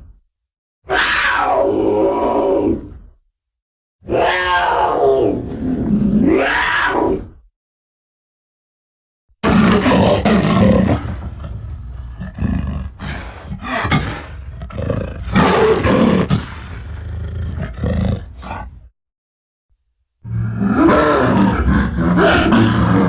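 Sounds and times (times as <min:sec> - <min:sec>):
dinosaur roar: 0:04.0 - 0:07.4, 0:09.4 - 0:18.9, 0:20.3 - 0:23.0.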